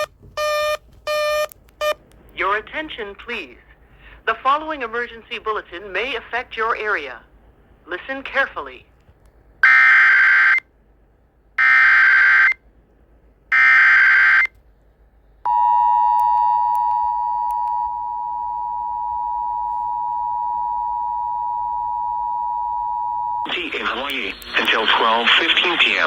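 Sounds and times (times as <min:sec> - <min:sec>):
screechy data bursts: 0:23.5 - 0:26.0.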